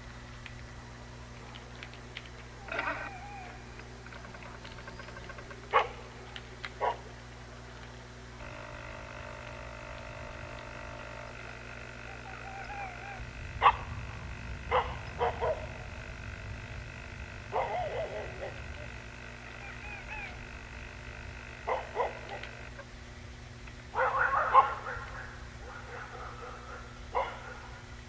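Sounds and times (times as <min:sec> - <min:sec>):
steady electrical hum: 0:00.0 - 0:28.0
short sharp animal calls: 0:02.6 - 0:03.8, 0:11.9 - 0:13.4, 0:17.5 - 0:20.7.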